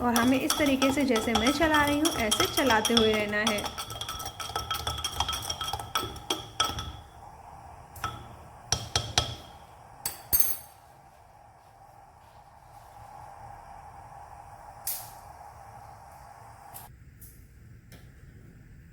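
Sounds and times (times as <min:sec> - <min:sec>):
spoon clinking in clay pot: 0:00.0 - 0:07.2, 0:08.0 - 0:10.8.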